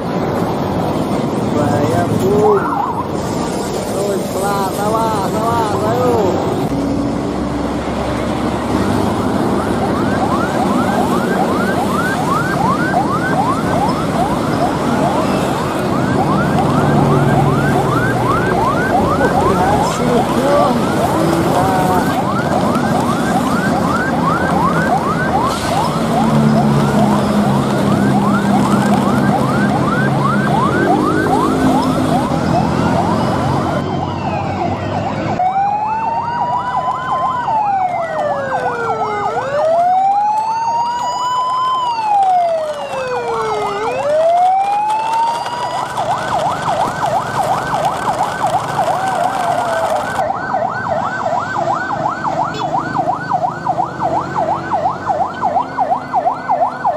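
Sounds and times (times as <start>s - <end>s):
emergency vehicle siren: 0.0s - 56.9s
higher siren sweeping: 1.6s - 56.9s.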